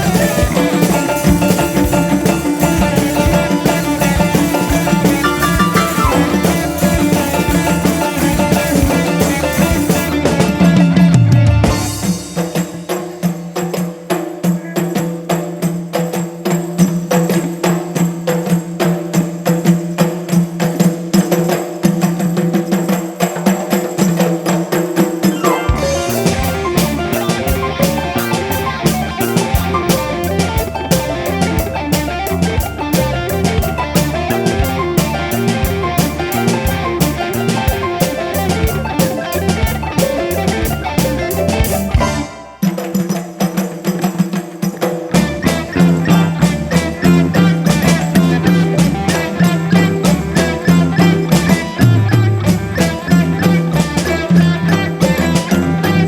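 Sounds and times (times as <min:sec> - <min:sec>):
live ensemble playing: 0:00.0 - 0:15.0, 0:23.7 - 0:56.0
drums and percussion: 0:00.0 - 0:56.0
deep bass part: 0:25.7 - 0:42.3.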